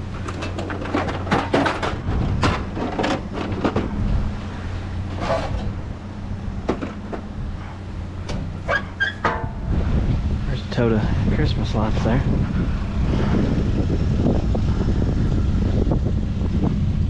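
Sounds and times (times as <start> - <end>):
junk clattering and knocking: 0.0 - 10.1
steady low hum: 0.0 - 17.0.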